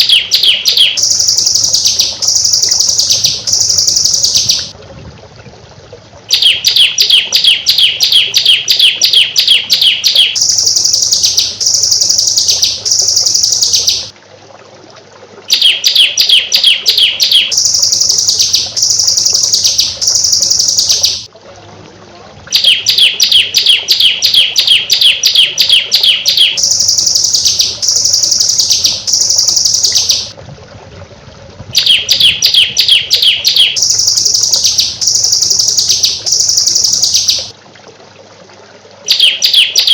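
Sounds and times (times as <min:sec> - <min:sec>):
downslurred bird whistles: 0:00.0 - 0:04.7, 0:06.3 - 0:14.1, 0:31.8 - 0:37.5, 0:39.1 - 0:39.9.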